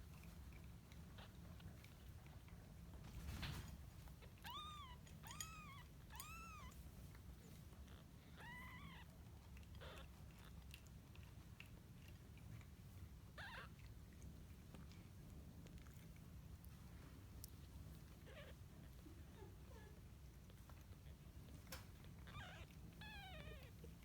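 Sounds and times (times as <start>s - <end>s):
kittens mewing: 4.2s - 6.8s, 7.9s - 9.1s, 9.8s - 10.4s, 18.2s - 20.0s, 22.2s - 24.0s.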